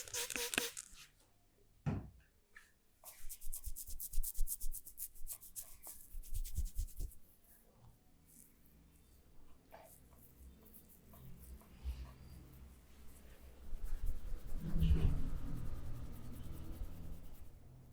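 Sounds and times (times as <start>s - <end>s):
hands rubbing skin briskly: 0.0s - 0.8s, 3.1s - 7.2s.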